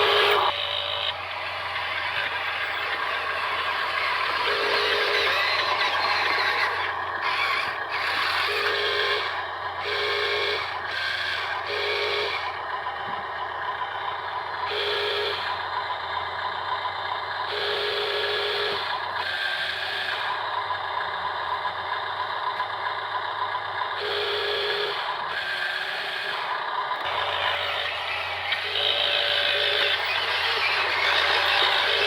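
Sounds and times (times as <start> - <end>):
motor whine bursts: 0.0 - 13.9, 14.6 - 15.7, 24.0 - 32.0
small electric motors running: 0.0 - 22.7, 23.9 - 32.0.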